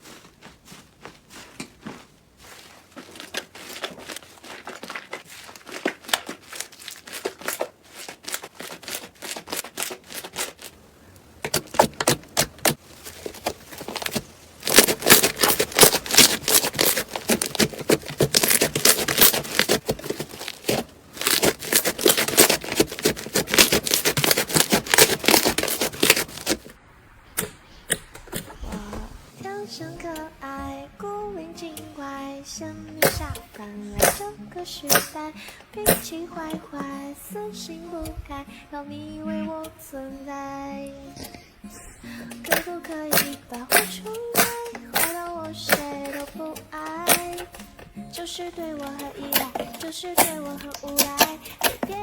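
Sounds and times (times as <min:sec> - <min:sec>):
slime crackling and popping: 0:03.2 - 0:10.8, 0:11.5 - 0:26.8.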